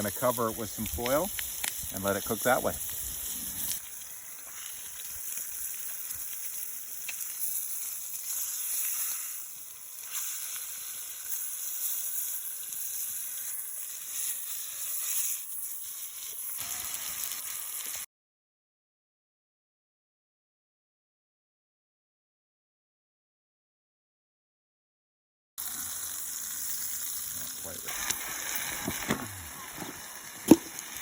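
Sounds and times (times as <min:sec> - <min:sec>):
chicken sizzling in a pan: 0:00.0 - 0:18.1, 0:25.6 - 0:31.0.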